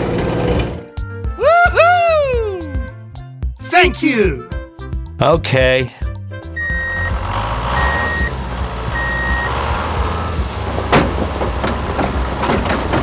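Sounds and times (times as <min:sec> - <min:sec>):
reversing beeper: 0:06.6 - 0:08.4, 0:09.0 - 0:09.6
sharp knocks: 0:08.0 - 0:13.0.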